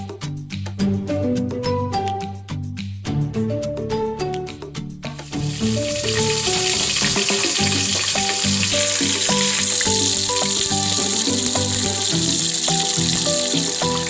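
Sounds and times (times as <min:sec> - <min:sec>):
food sizzling in oil: 0:05.2 - 0:14.0.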